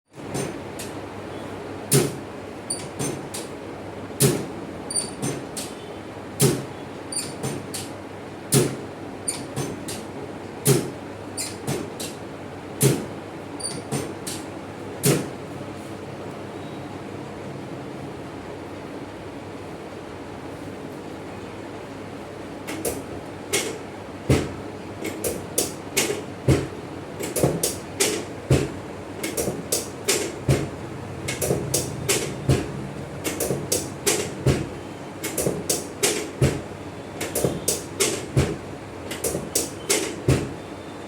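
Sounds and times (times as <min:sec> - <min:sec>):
sharp slaps or knocks: 0:01.9 - 0:02.2, 0:08.5 - 0:08.8, 0:12.8 - 0:13.1, 0:15.0 - 0:15.3.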